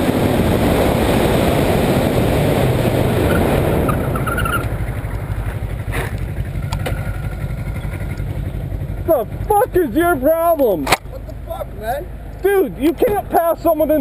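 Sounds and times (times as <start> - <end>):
wind on microphone: 0.0 - 5.1
motorcycle engine rumble: 0.0 - 14.0.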